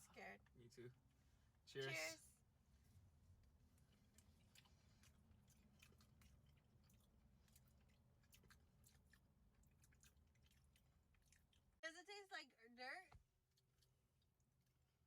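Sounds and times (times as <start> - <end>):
faint chewing: 2.7 - 11.8, 13.1 - 15.0.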